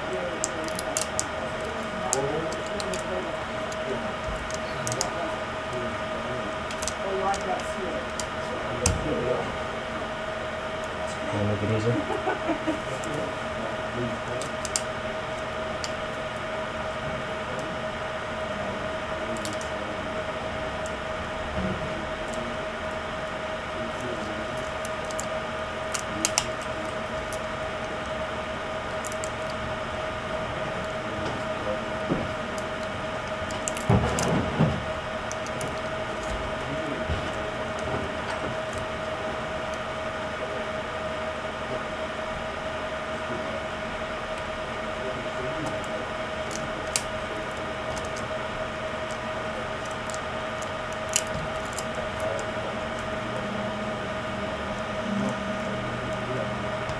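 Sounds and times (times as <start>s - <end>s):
faint whine: 0.0s - 56.9s
small clicks and taps of parts: 4.4s - 5.1s, 6.7s - 7.4s.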